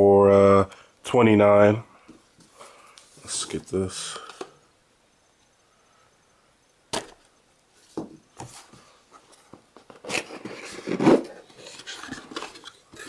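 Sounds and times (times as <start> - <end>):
knocks and scraping rustles: 7.0 - 13.0.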